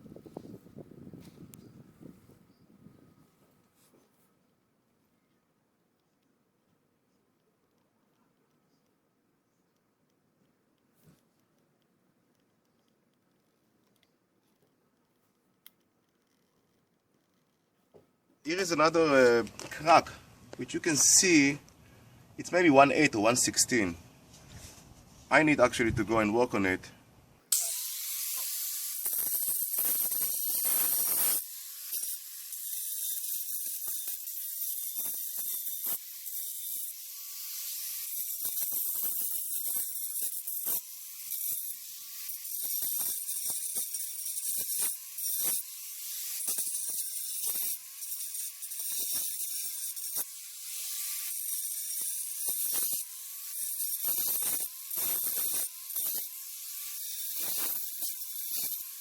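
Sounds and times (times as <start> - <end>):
angle grinder cutting concrete: 27.5 - 59.0.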